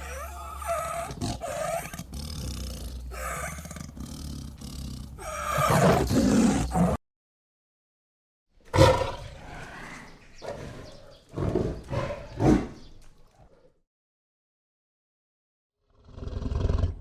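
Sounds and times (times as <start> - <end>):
tiger roaring: 0.0 - 7.0, 8.7 - 12.9.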